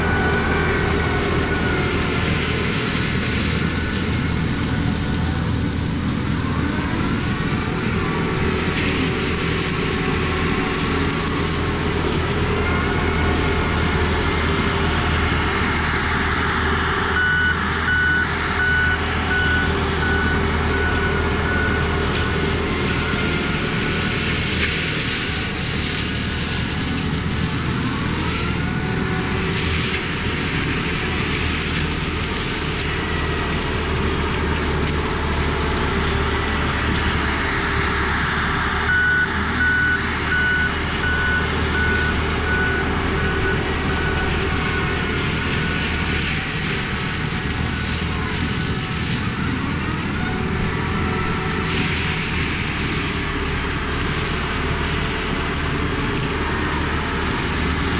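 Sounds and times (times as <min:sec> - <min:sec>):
excavator brush cutter running: 0:00.0 - 0:57.9.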